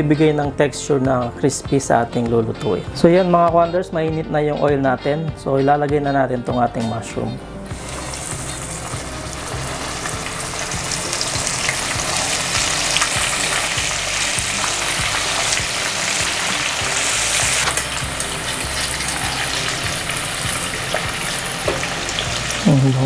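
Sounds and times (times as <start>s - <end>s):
deep-frying sizzle: 7.5s - 23.0s.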